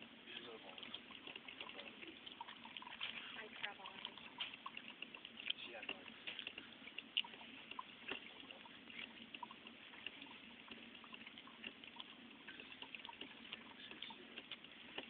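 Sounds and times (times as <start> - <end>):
coffee maker gurgling and dripping: 0.0 - 15.0.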